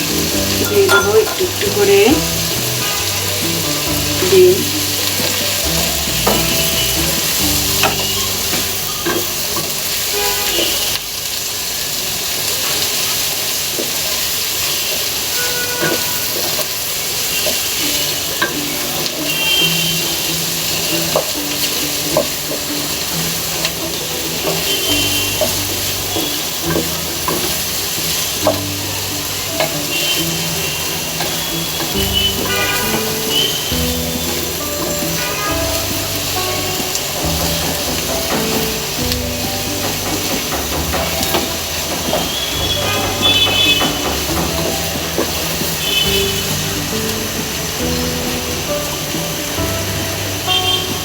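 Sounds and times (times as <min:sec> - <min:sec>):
egg sizzling in hot oil: 0:00.0 - 0:51.0
spatula scraping a pan: 0:14.7 - 0:47.4.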